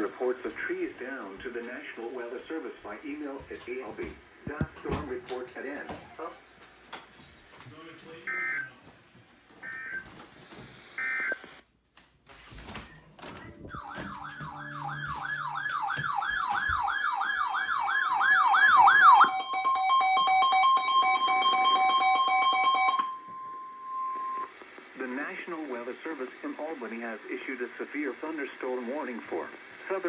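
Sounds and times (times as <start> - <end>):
two-tone attention signal: 13.7 - 16.8, 19.0 - 24.5
warbling siren tone: 13.7 - 24.5.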